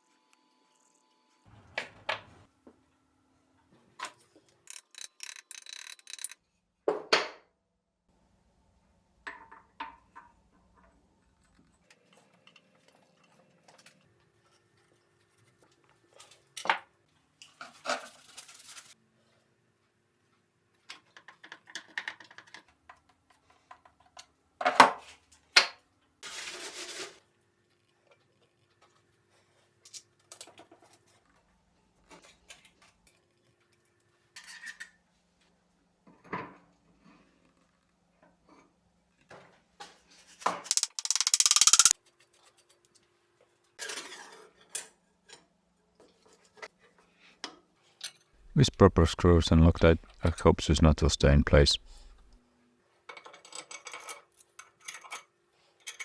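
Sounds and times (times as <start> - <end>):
metal clinks and knocks: 4.7 - 6.4, 40.7 - 41.9.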